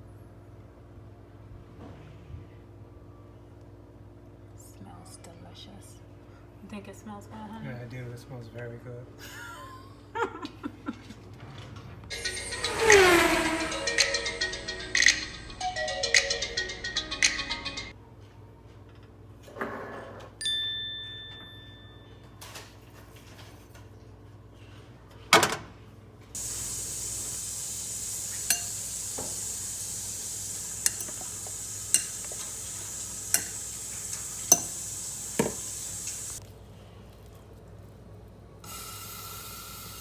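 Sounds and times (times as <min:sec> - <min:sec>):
food sizzling in pan: 0:26.4 - 0:36.4
cookware and utensils clinking: 0:27.6 - 0:36.4.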